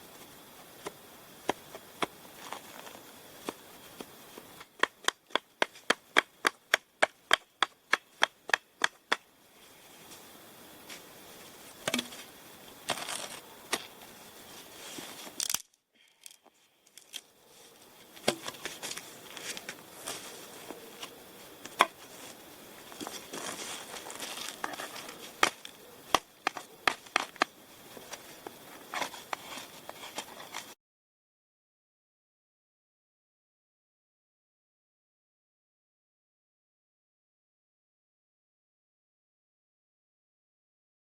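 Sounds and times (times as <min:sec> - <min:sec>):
dry tinder crinkling: 0:10.9 - 0:30.8.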